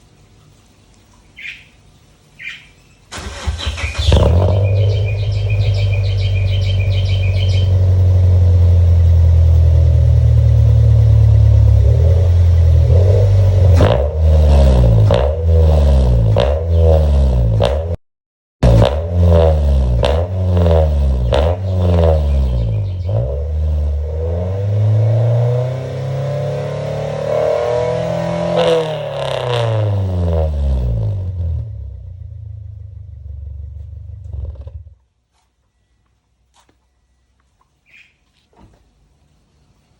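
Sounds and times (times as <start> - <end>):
car engine starting and idling: 3.1 - 17.6, 18.6 - 35.0
car engine revving: 3.1 - 18.0, 18.6 - 35.0.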